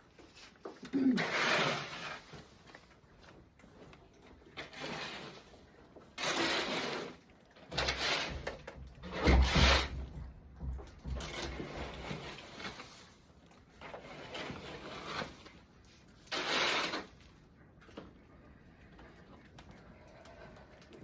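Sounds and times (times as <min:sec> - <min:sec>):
scraping and rubbing strokes: 0:00.2 - 0:02.8, 0:04.5 - 0:10.2, 0:11.0 - 0:17.4.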